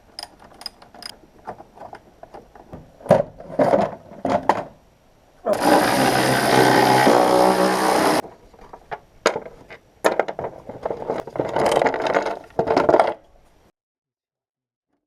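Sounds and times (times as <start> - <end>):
steady running sound: 5.6 - 8.2.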